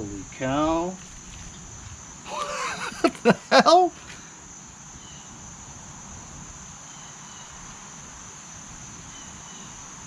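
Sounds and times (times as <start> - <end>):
high-pitched insect chorus: 0.0 - 10.0.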